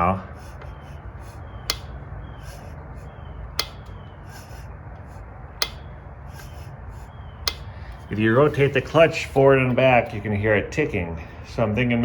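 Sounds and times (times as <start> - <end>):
steady low hum: 0.0 - 12.0
sharp engine ticks: 1.4 - 4.6, 5.5 - 6.6, 7.3 - 8.1.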